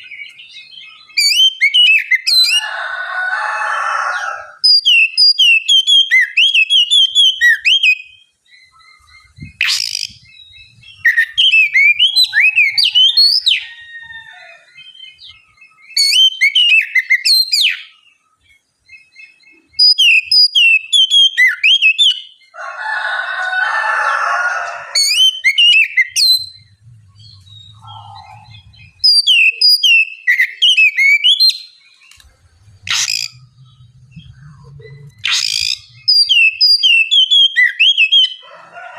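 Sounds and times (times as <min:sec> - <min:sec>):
bird singing whistled notes: 0:00.0 - 0:02.6, 0:04.6 - 0:22.6, 0:25.0 - 0:38.4
harsh rasping bird call: 0:11.0 - 0:14.8, 0:22.6 - 0:38.6.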